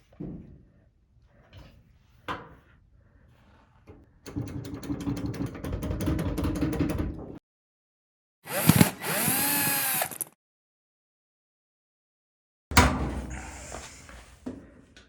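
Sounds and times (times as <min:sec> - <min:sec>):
small motor with rapid clicking: 0:08.5 - 0:10.4.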